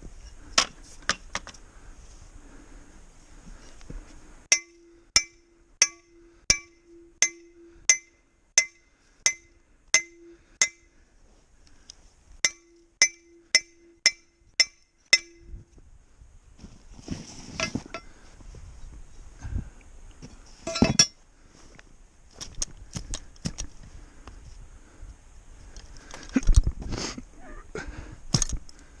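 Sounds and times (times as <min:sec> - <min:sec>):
hammer striking metal stake: 0:04.5 - 0:10.9, 0:12.4 - 0:15.6, 0:17.6 - 0:18.1, 0:20.7 - 0:21.2.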